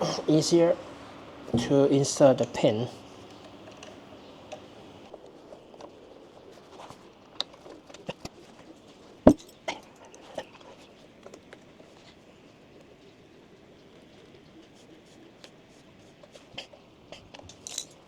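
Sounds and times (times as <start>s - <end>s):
metal parts and tools clicking: 17.5s - 18.0s.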